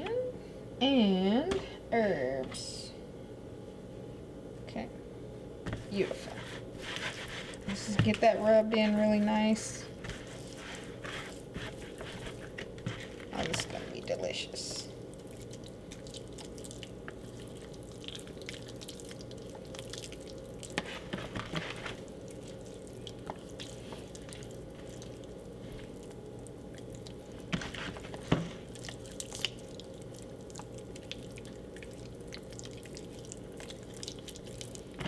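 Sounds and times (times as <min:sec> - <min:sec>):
steady low hum: 0:00.0 - 0:35.0
hands squishing raw meat: 0:10.0 - 0:13.8, 0:14.7 - 0:35.0.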